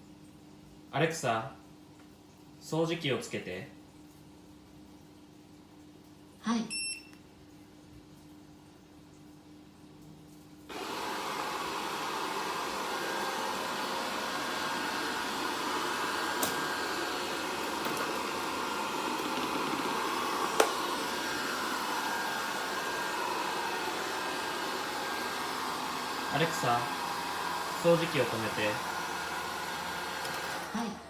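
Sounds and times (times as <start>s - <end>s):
robot vacuum cleaner running: 10.7s - 31.0s.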